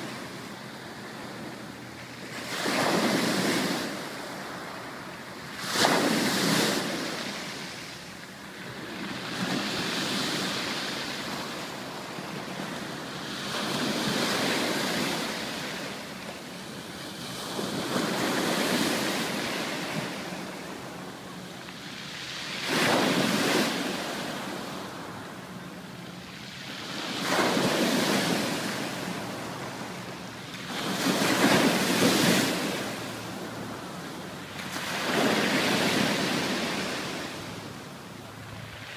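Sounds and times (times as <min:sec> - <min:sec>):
ocean waves breaking on beach: 0:00.0 - 0:38.9.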